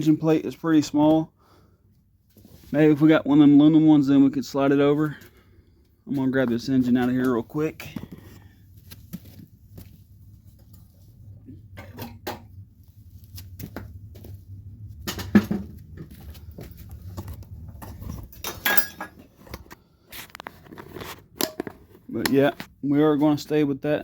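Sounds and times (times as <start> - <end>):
low steady hum: 0.0 - 24.0
metal clinks and knocks: 16.6 - 19.3.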